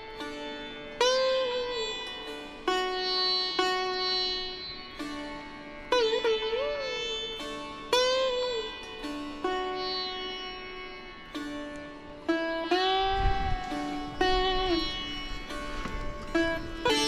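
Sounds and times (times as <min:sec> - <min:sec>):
plucked string instrument notes: 0:00.0 - 0:17.0.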